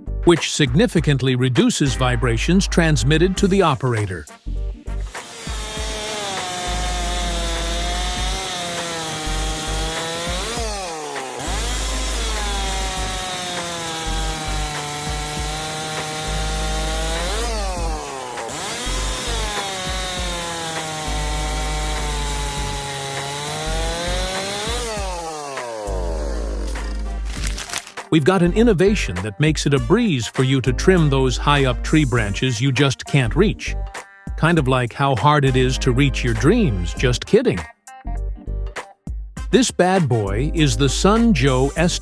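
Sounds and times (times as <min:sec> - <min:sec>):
music with low pulsing beat: 0:04.4 - 0:06.1, 0:06.7 - 0:08.6, 0:14.0 - 0:27.6
chainsaw cutting wood: 0:05.0 - 0:28.2.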